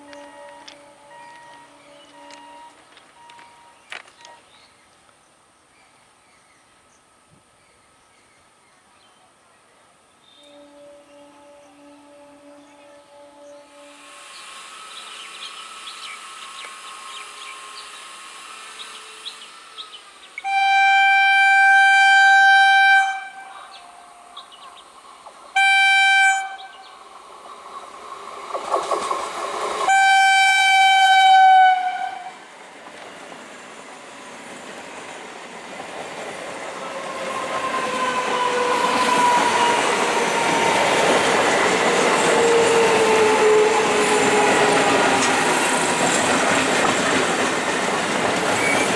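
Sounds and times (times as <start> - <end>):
train horn: 0.0 - 4.4, 10.3 - 16.2, 16.8 - 24.8, 25.5 - 27.0, 29.8 - 32.5, 36.7 - 46.6
train motor whine: 0.0 - 4.5, 13.1 - 32.6, 35.8 - 48.9
train passing with wheel noise: 0.0 - 9.0, 9.9 - 48.9.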